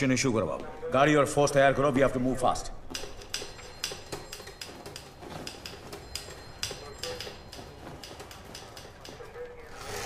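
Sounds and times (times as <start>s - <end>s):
light clicks and clinks: 2.9s - 9.5s.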